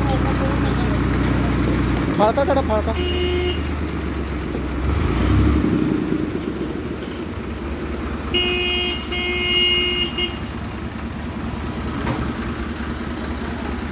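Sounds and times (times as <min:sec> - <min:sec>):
vehicle engine idling: 0:00.0 - 0:13.9
horn blasts: 0:02.7 - 0:03.9, 0:08.3 - 0:10.7.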